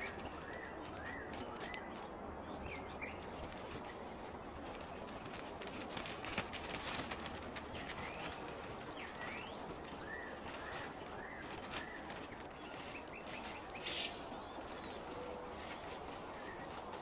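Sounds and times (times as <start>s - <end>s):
birds chirping: 0.0s - 5.7s, 6.6s - 17.0s
background hiss: 6.4s - 17.0s.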